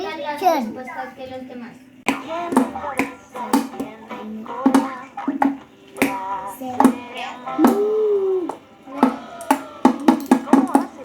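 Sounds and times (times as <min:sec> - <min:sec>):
child singing: 0:02.1 - 0:11.0
percussion instrument strikes: 0:02.1 - 0:11.0.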